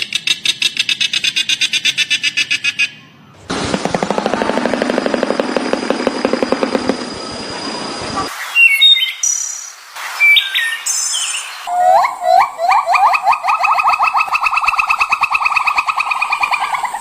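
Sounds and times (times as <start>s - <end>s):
whistled birdsong: 7.0s - 17.0s.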